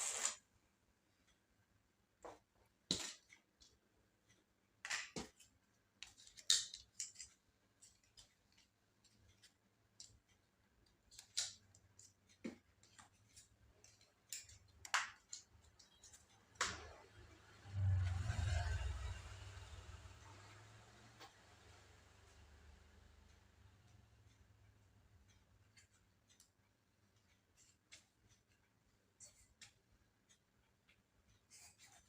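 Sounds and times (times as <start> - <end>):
tools and small parts clicking: 2.9 - 16.9.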